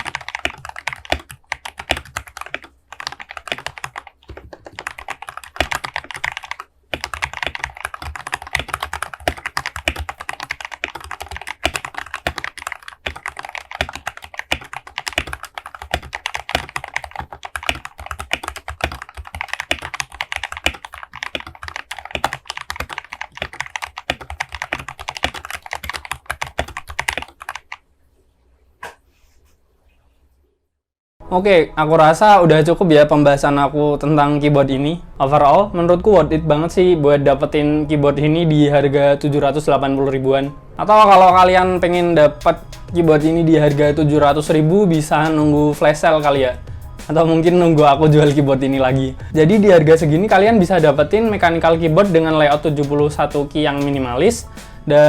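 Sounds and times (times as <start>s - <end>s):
mechanical keyboard typing: 0.0s - 27.8s, 41.3s - 55.0s.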